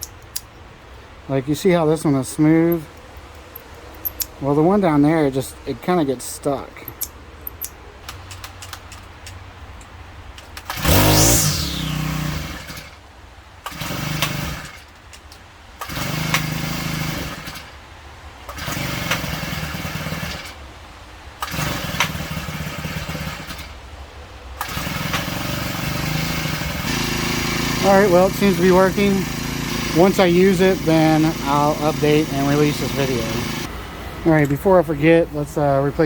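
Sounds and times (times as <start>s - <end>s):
string trimmer engine revving: 10.7s - 13.0s, 13.7s - 14.8s, 15.8s - 17.7s, 18.6s - 20.5s, 21.4s - 23.7s, 24.6s - 33.7s.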